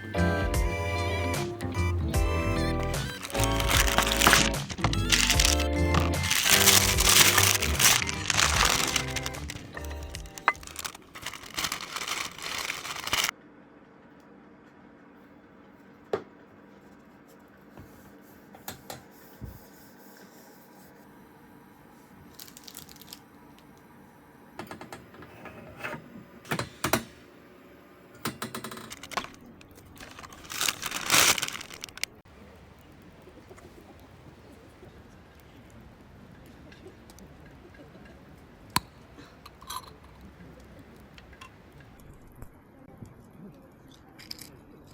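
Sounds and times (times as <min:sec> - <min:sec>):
music: 0:00.0 - 0:13.3
crinkling and rustling: 0:02.6 - 0:13.3, 0:22.3 - 0:23.2, 0:28.6 - 0:32.2.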